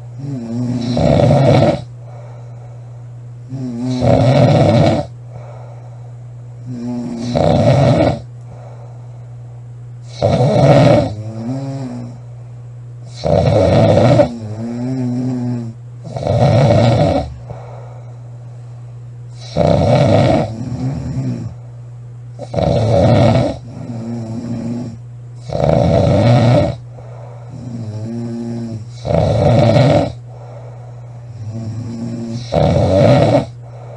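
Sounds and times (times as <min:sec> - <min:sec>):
girl snoring loudly: 0:00.2 - 0:01.9, 0:03.5 - 0:05.1, 0:06.6 - 0:08.3, 0:10.1 - 0:12.2, 0:13.1 - 0:17.5, 0:19.4 - 0:21.6, 0:22.4 - 0:26.8, 0:27.5 - 0:30.2, 0:31.3 - 0:33.6.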